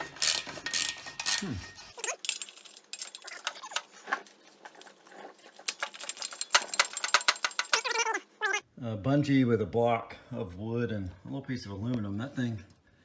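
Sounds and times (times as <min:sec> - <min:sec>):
socket ratchet clicking: 0:00.0 - 0:01.6, 0:05.7 - 0:08.1.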